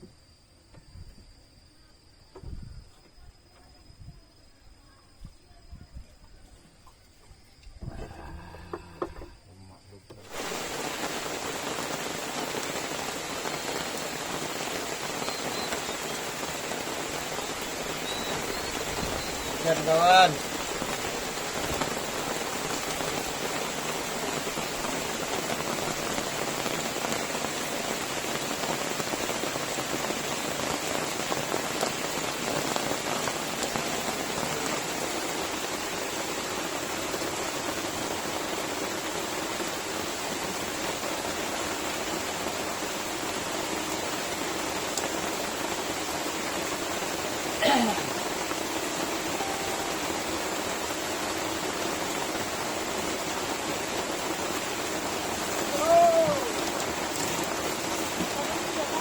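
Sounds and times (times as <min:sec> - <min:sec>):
steady rain falling: 0:07.0 - 0:59.0
brief falling-pitch sound: 0:49.4 - 0:50.5.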